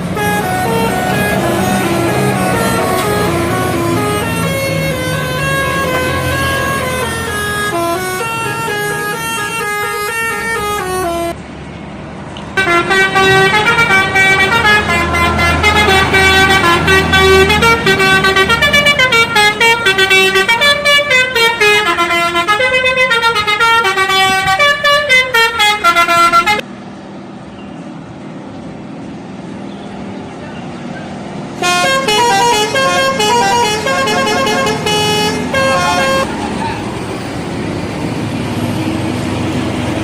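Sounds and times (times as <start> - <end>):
musical bus air horn: 0.0 - 11.4, 12.6 - 26.6, 31.6 - 36.4.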